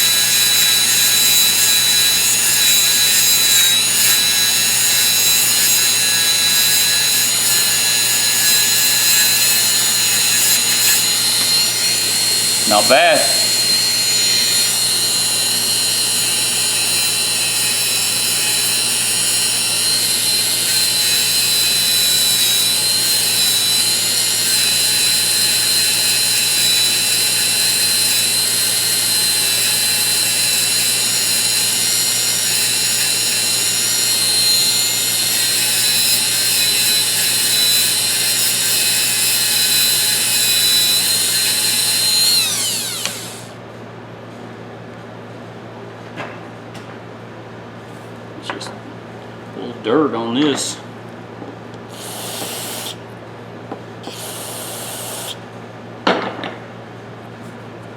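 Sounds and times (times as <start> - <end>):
high-speed power tool whine: 0.0 - 43.6, 51.9 - 53.0, 54.0 - 55.4.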